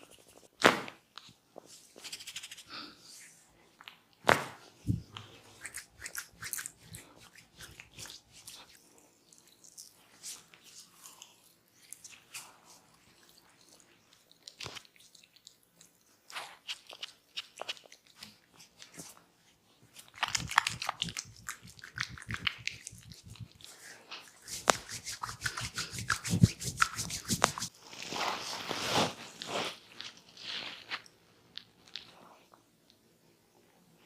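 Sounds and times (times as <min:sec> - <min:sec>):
hands rubbing skin and hair: 0:01.6 - 0:02.7, 0:04.9 - 0:08.8, 0:19.9 - 0:31.1
rubbing swish: 0:20.5 - 0:27.7
fast tapping on skin: 0:24.6 - 0:27.7.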